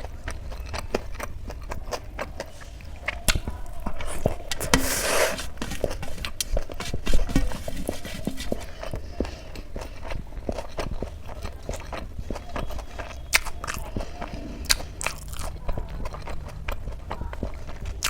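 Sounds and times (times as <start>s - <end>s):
person chewing food: 0.0s - 18.0s
rustling: 2.6s - 9.0s.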